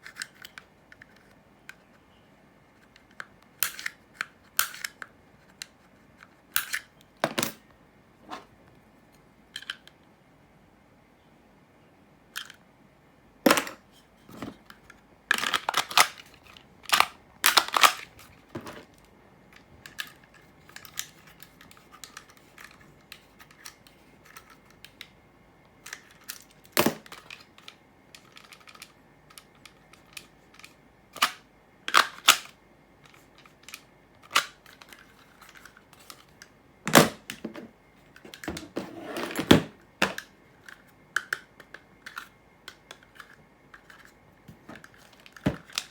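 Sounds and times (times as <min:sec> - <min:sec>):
plastic clicks and scrapes: 0:00.0 - 0:02.0, 0:14.2 - 0:25.1, 0:25.8 - 0:36.5, 0:37.1 - 0:45.9.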